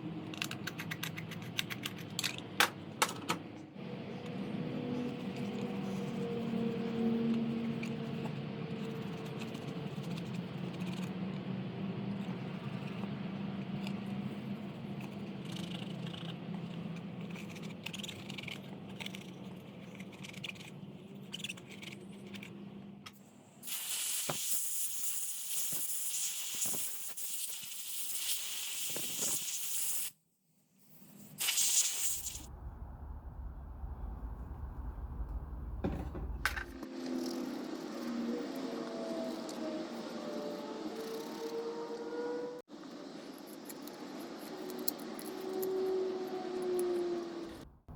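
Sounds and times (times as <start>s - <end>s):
loud even hiss: 31.4s - 35.2s
low hum: 32.2s - 36.8s.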